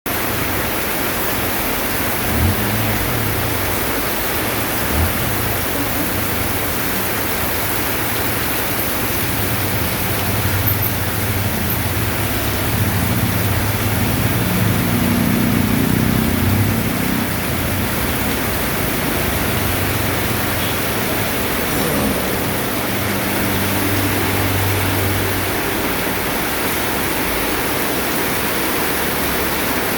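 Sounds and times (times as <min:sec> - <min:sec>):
heavy rain falling: 0:00.1 - 0:29.9.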